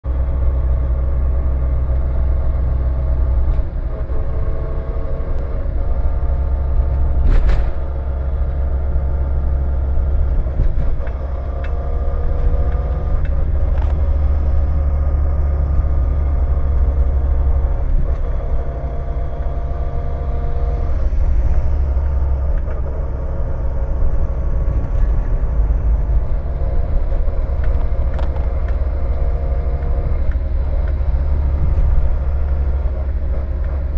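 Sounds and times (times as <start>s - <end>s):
gearbox growling: 9.8s - 33.9s.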